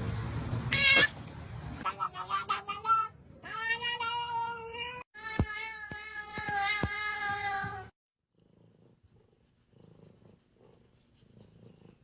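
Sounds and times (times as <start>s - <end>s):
cat meowing: 0.7s - 1.2s
cat purring: 8.3s - 12.0s.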